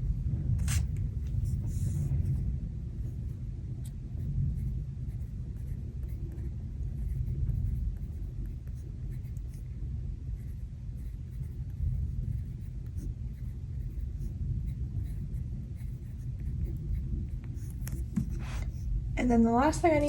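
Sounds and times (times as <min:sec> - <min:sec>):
thunderstorm rumble: 0:00.0 - 0:20.0
paper scratches and taps: 0:17.4 - 0:18.7.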